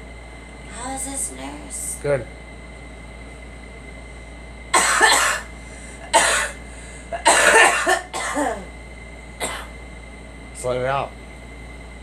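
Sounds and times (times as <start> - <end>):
girl coughing: 4.8 - 8.7, 9.4 - 9.7.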